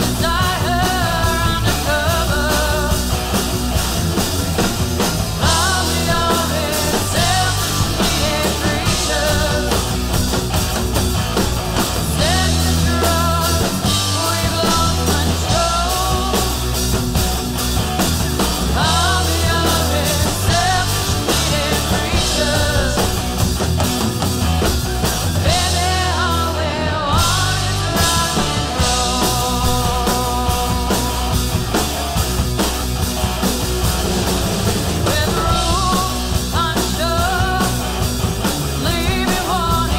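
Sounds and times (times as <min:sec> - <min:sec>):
woman singing: 0:00.0 - 0:03.0, 0:05.4 - 0:09.9, 0:12.1 - 0:16.6, 0:18.8 - 0:23.2, 0:25.4 - 0:31.3, 0:35.0 - 0:37.9, 0:38.8 - 0:39.9
rock band playing: 0:00.0 - 0:39.9.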